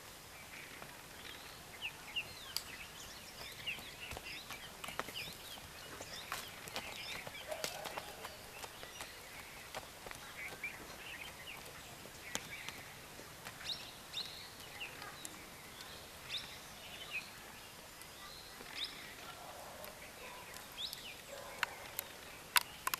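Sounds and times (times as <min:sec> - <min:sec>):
small birds chirping: 0:00.0 - 0:22.9
steady outdoor hiss: 0:00.0 - 0:22.9
sharp clicks: 0:19.8 - 0:22.9.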